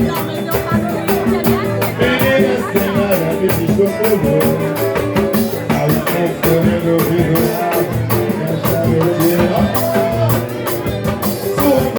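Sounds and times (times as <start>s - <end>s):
person singing: 0.0s - 11.9s
samba band music: 0.0s - 11.9s.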